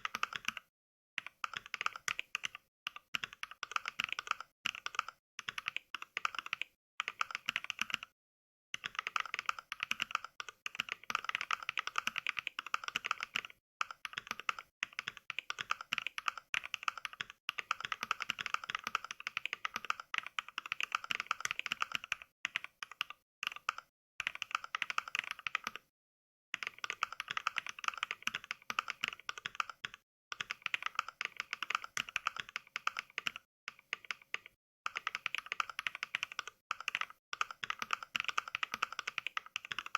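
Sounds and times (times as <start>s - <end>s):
keyboard clicks: 0.0s - 8.1s, 8.8s - 25.9s, 26.6s - 39.9s.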